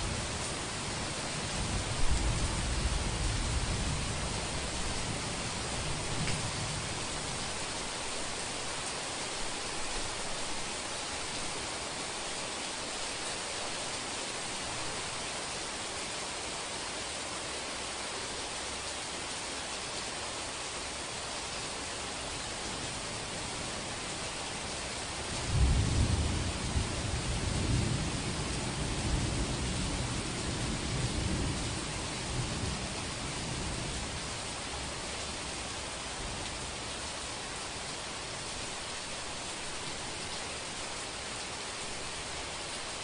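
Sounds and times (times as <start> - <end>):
heavy rain: 0.0 - 43.0
low thunder rumble: 25.5 - 31.8.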